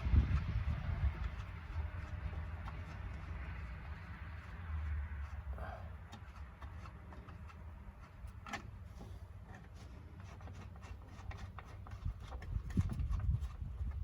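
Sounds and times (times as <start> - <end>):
low rumble: 0.0 - 1.8.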